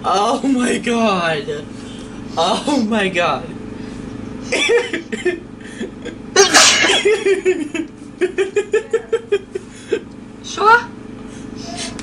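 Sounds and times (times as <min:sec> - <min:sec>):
girl sneezing loudly: 0:06.4 - 0:07.0.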